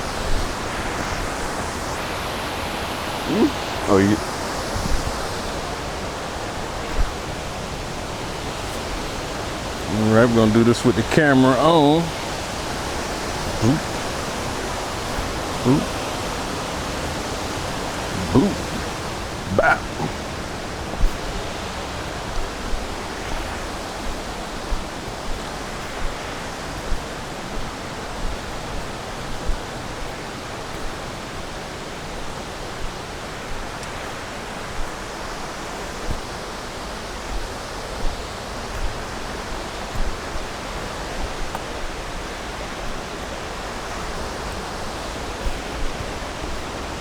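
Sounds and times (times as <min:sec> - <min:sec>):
waterfall rushing: 0:00.0 - 0:28.4.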